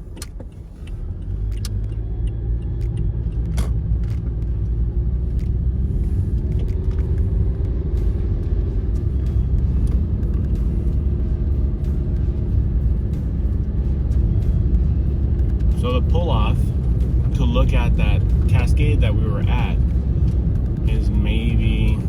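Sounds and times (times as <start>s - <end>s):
road and engine rumble in car: 0.0s - 22.0s.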